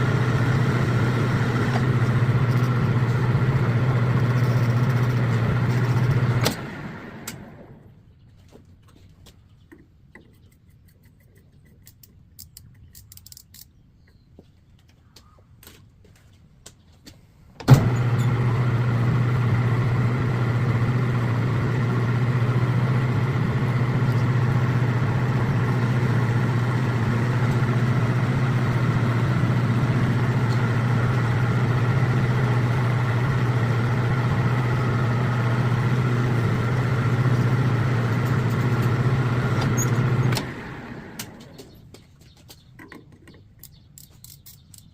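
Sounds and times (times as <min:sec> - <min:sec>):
metal lathe motor humming: 0:00.0 - 0:07.6, 0:17.7 - 0:41.5.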